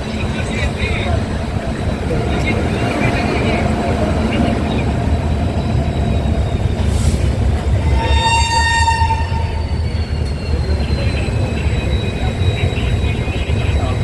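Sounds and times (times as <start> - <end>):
train rumbling on track: 0.0 - 14.0
train horn: 7.8 - 9.8.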